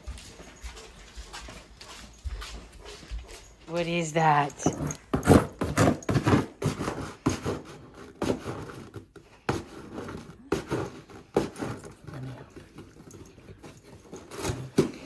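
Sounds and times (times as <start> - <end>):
dog scratching cardboard box: 4.6 - 15.0.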